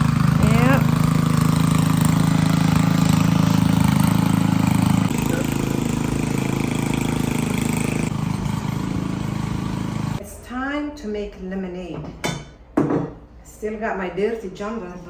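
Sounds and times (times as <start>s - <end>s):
engine idling: 0.0s - 10.2s.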